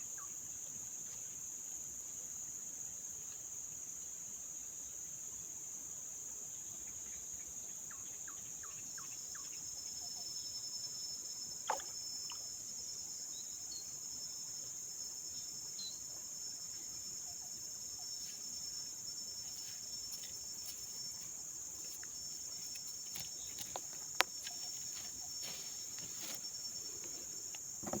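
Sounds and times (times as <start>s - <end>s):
insects chorus: 0.0s - 28.0s
small clicks and knocks: 22.8s - 24.6s.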